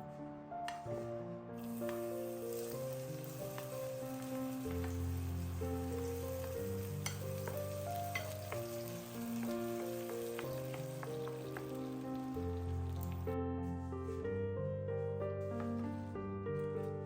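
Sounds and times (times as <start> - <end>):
crackling hiss: 0.7 - 13.3.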